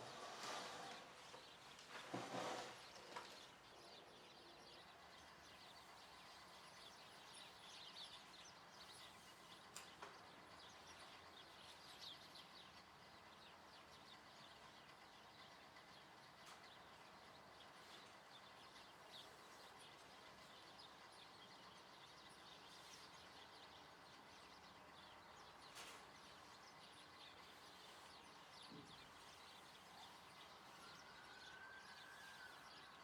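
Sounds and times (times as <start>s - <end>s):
faint bird chirps: 25.2s - 33.0s.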